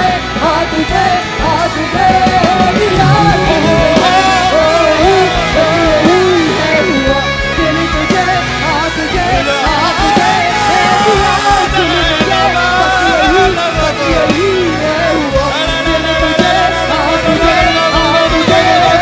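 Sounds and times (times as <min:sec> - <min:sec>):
live rock band music: 0:00.0 - 0:19.0
wavering lead melody: 0:01.9 - 0:06.8.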